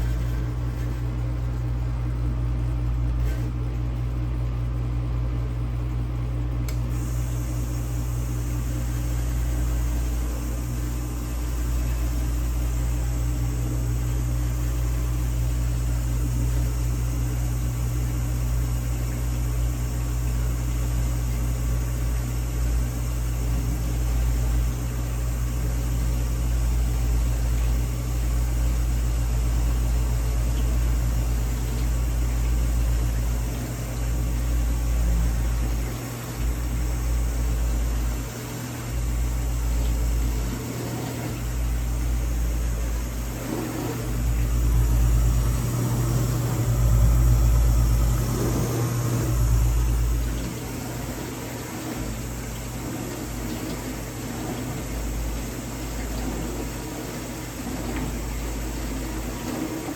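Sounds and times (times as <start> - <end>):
dishwasher pump motor humming: 0.0 - 59.9.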